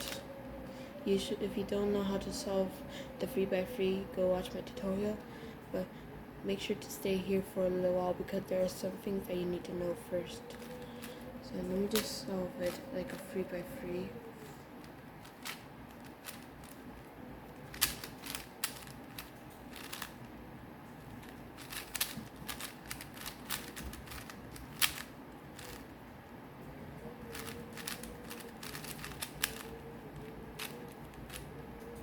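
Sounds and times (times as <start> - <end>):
puzzle cube plastic clicks: 14.8 - 16.8, 17.7 - 20.2, 21.2 - 25.9, 27.3 - 32.0.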